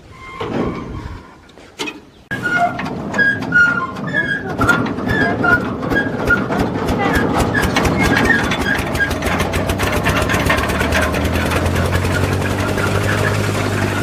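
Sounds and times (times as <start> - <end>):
birds chirping: 0.0 - 6.4
engine clattering: 1.8 - 14.0.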